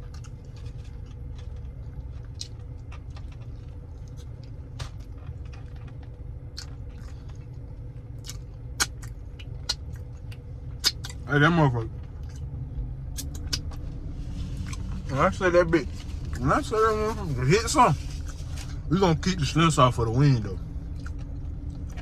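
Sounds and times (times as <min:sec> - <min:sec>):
clicks and crackles of eating: 0:00.0 - 0:12.5, 0:13.1 - 0:16.4, 0:20.8 - 0:22.0
steady low hum: 0:00.0 - 0:22.0.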